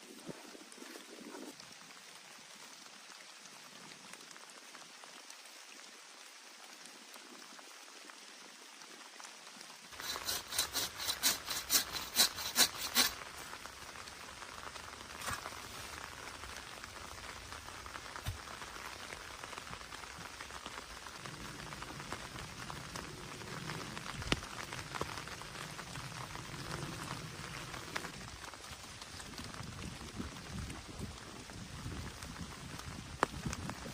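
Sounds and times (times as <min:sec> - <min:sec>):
heavy rain: 0:00.0 - 0:33.9.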